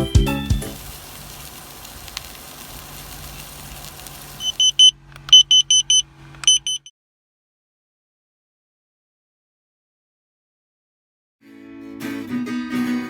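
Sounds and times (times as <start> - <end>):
low hum with hiss: 0.5 - 6.9
high-pitched electronic beeps: 4.4 - 6.9.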